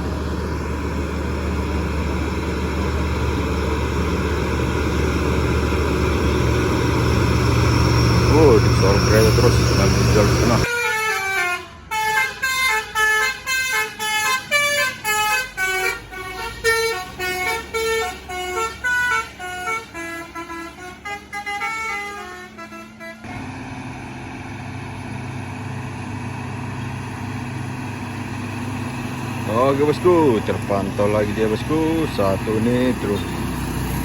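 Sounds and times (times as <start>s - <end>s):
heavy vehicle engine running: 0.0s - 10.7s, 12.6s - 34.0s
musical air horn: 8.5s - 23.3s.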